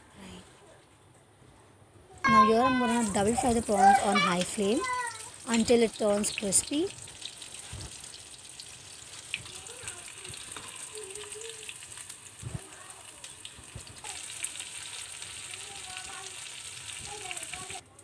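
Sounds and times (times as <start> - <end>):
prawns sizzling in hot oil: 2.3 - 18.0
small crackles of frying: 2.3 - 18.0.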